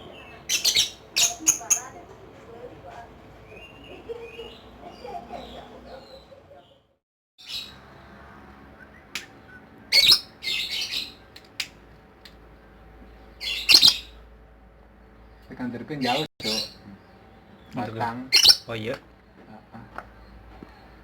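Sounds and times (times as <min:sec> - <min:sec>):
bird squawking shrilly: 0:13.4 - 0:14.2.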